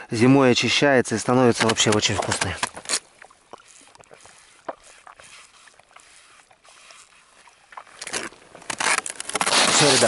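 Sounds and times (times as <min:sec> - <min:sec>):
sipping through a straw: 0:02.4 - 0:10.0.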